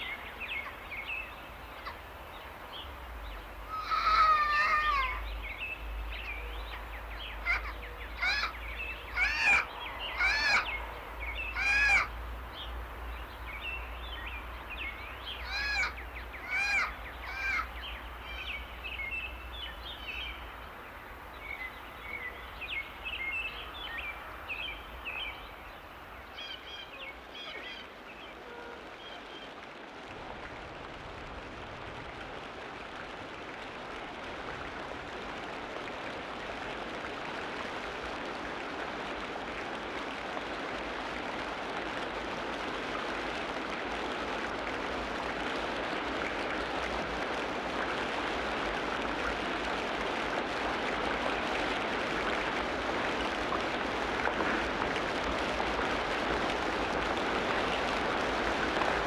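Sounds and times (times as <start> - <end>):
birds chirping: 0.0 - 29.6
steady background hiss: 0.0 - 59.0
bird giving loud arched calls: 3.7 - 5.3, 7.3 - 10.8, 11.4 - 12.1, 15.4 - 17.7.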